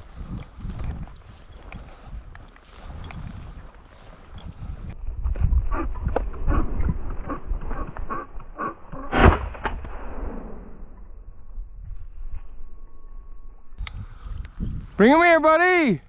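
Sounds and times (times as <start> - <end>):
footsteps crunching through dry cover: 0.0 - 5.7
shotgun shot: 9.1 - 10.8.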